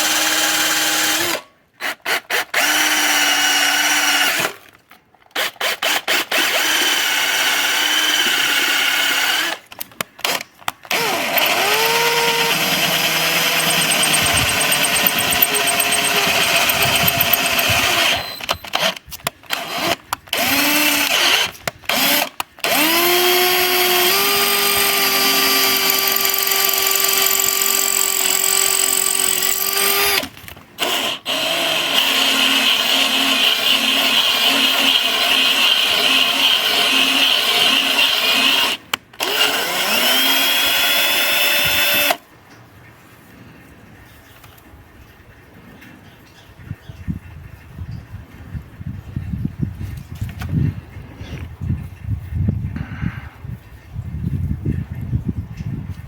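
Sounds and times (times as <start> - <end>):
power drill motor whining: 5.9 - 42.2.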